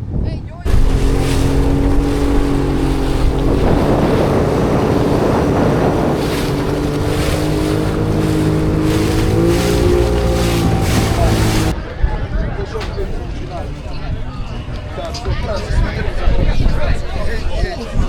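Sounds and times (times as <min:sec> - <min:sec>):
wind: 0:00.0 - 0:18.0
motorboat engine running: 0:00.7 - 0:11.8
rushing water: 0:00.7 - 0:11.8.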